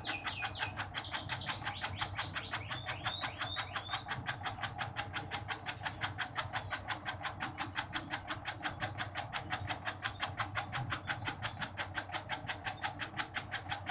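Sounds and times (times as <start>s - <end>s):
blade chopping tobacco: 0.0s - 13.9s
low motor hum: 0.0s - 13.9s.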